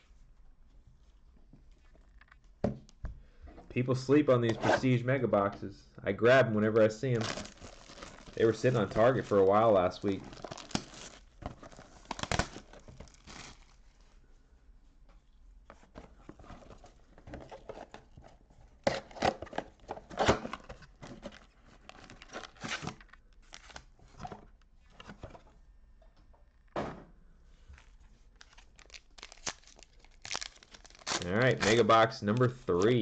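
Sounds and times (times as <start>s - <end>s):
packaging crinkling and tearing: 7.0s - 14.0s, 18.9s - 23.9s, 27.8s - 33.0s.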